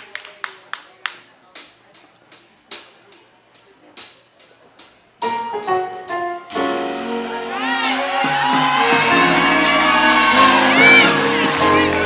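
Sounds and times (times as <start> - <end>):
live band music: 1.6 - 12.0
keyboard chords: 5.2 - 12.0.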